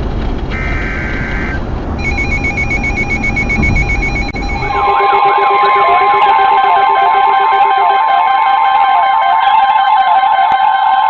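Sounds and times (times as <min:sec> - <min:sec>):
warbling alarm: 0:00.5 - 0:11.0
electronic data burst screech: 0:00.6 - 0:08.0
radio alarms beeping: 0:00.6 - 0:10.6
steady high alert tone: 0:02.0 - 0:11.0.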